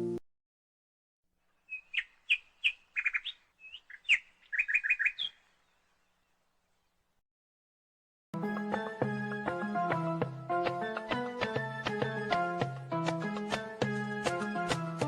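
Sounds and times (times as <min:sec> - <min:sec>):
bird chirping and trilling: 0:01.5 - 0:06.4.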